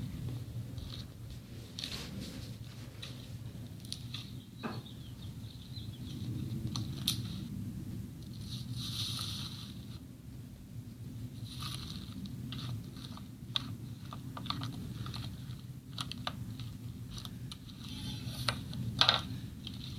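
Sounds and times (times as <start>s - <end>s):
low steady hum: 0.0s - 19.9s
small crackles and clicks: 3.0s - 4.4s, 6.2s - 7.5s, 11.4s - 19.9s.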